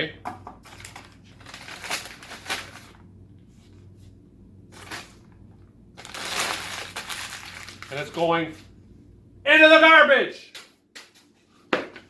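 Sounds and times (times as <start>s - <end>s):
paper wrapping rustling: 0.6s - 3.0s, 4.7s - 8.8s.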